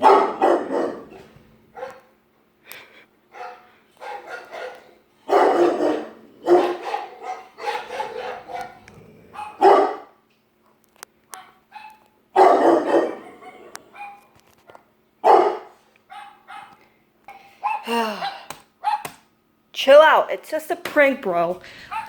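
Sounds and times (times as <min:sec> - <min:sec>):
dog barking: 0:00.0 - 0:02.1, 0:03.3 - 0:10.2, 0:11.3 - 0:16.8, 0:17.6 - 0:19.2.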